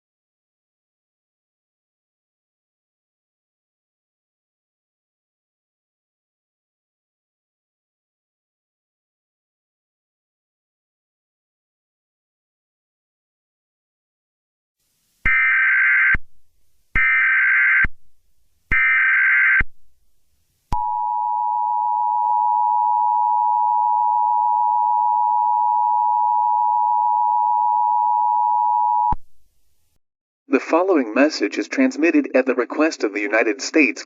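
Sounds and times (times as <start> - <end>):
two-tone attention signal: 20.8 - 29.2.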